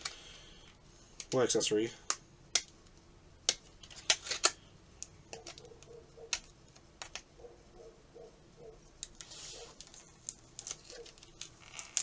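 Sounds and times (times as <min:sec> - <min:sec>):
plastic packaging clicks and taps: 0:02.1 - 0:07.3.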